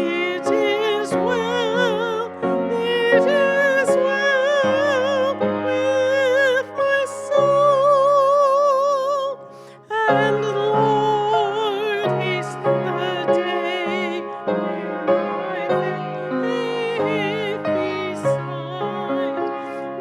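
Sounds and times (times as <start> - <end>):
voices singing a hymn: 0.0 - 8.2, 10.0 - 20.0
piano accompaniment: 0.0 - 20.0.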